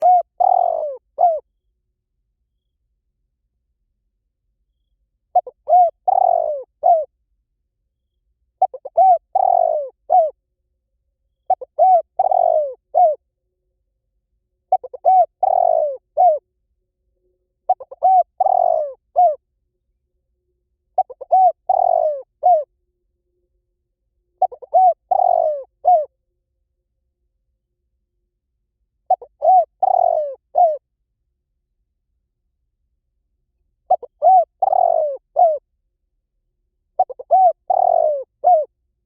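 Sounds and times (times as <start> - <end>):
dove cooing: 0.0 - 1.5, 5.3 - 7.1, 8.6 - 10.4, 11.5 - 13.2, 14.7 - 16.4, 17.7 - 19.4, 21.0 - 22.7, 24.4 - 26.1, 29.1 - 30.8, 33.9 - 35.6, 37.0 - 38.7.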